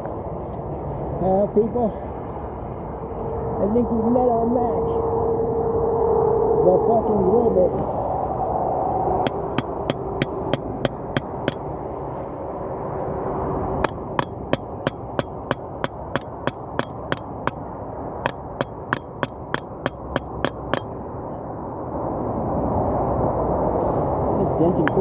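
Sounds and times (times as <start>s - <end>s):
sharp hammer taps on metal: 9.2s - 11.6s, 13.8s - 17.6s, 18.2s - 20.9s.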